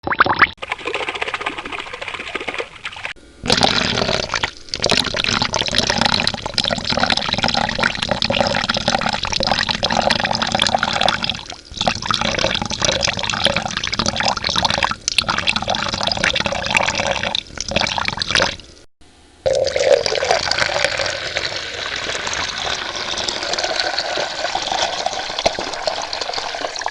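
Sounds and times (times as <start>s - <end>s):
water running and splashing: 20.8s - 26.9s.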